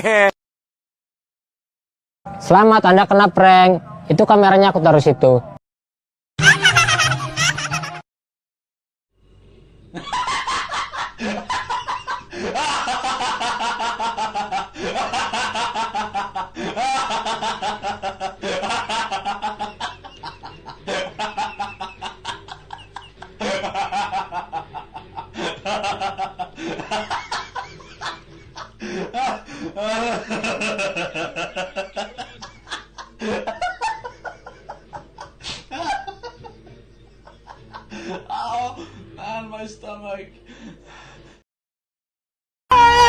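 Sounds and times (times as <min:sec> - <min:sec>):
high-pitched cartoon laughter: 0:06.4 - 0:08.0.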